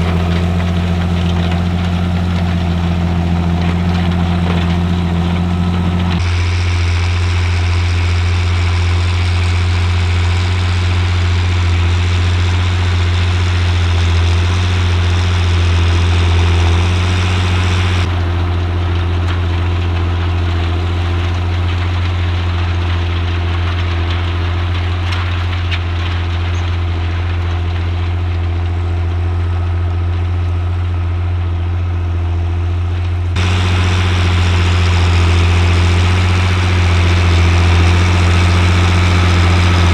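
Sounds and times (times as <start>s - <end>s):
tractor diesel engine droning: 0.0s - 6.6s, 9.9s - 39.9s.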